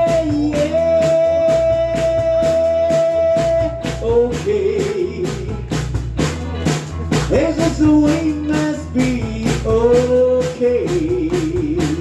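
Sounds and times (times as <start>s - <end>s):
person singing: 0.0s - 5.8s, 7.2s - 12.0s
drum beat: 0.0s - 12.0s
guitar: 0.0s - 12.0s.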